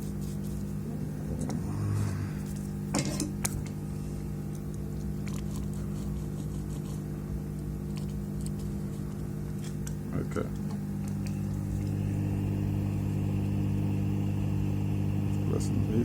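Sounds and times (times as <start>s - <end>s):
electrical hum: 0.0s - 16.0s.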